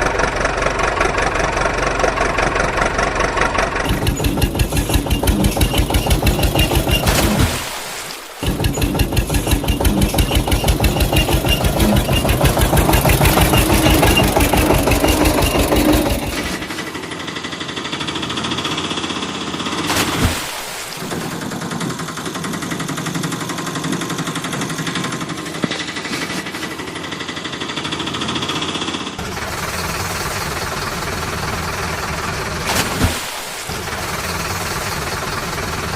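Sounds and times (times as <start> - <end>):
engine chugging: 0.0 - 7.8, 8.4 - 20.4, 21.0 - 35.9.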